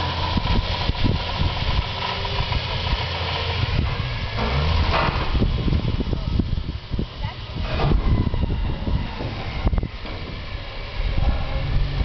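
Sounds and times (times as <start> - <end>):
engine running at low revs: 0.0 - 12.0
knocks and clatter: 0.3 - 5.8.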